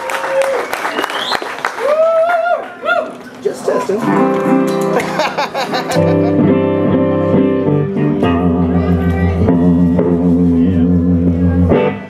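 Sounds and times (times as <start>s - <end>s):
blues guitar playing: 3.6s - 12.0s
held low bass note: 7.8s - 12.0s.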